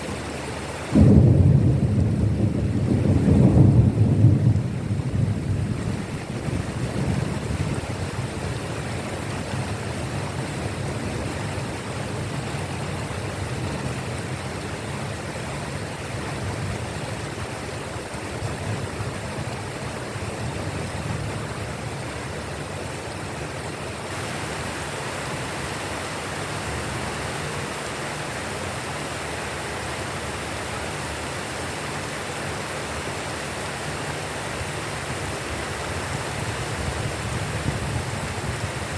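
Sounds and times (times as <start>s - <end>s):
steady rain hiss: 0.0s - 38.9s
thunder rumble: 0.9s - 17.4s.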